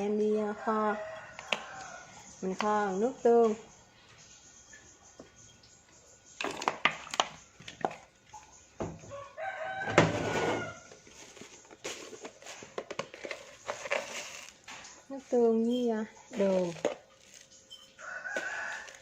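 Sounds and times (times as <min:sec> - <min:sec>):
rooster crowing: 0:00.4 - 0:02.4, 0:09.0 - 0:10.9, 0:17.9 - 0:19.0.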